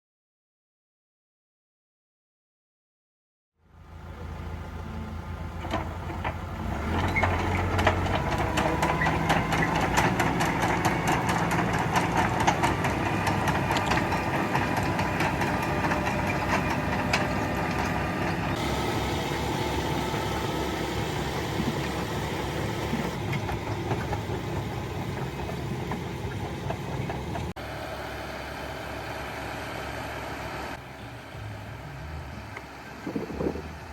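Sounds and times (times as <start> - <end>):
tractor engine running: 3.6 - 33.9
potato digger rattling clatter: 5.8 - 27.5.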